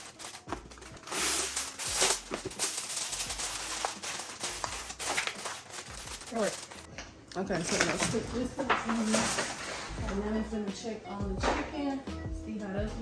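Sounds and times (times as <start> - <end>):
aluminum foil crinkling: 0.0 - 10.4.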